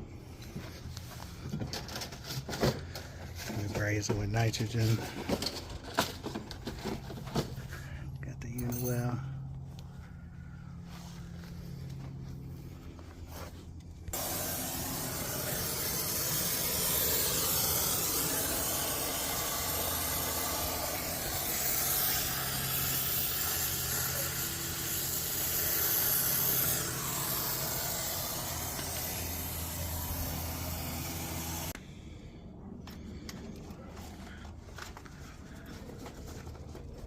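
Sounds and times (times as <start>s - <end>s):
pressurised gas hissing: 14.1s - 31.8s.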